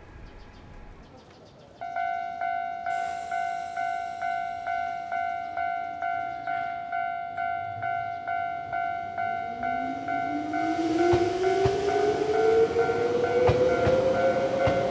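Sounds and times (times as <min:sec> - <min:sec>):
level crossing bell ringing: 0:01.8 - 0:10.8.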